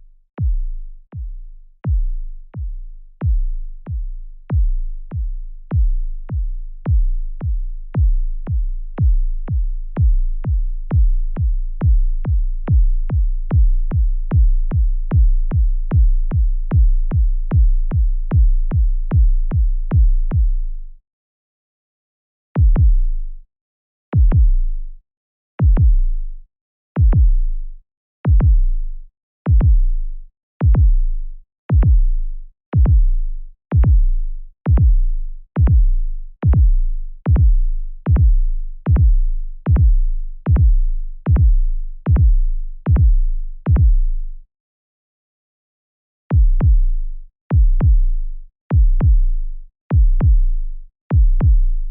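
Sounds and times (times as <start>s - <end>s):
deep electronic booms: 36.5s - 44.0s, 46.4s - 46.8s, 47.6s - 48.0s, 48.8s - 49.2s, 50.0s - 50.4s, 51.2s - 51.6s.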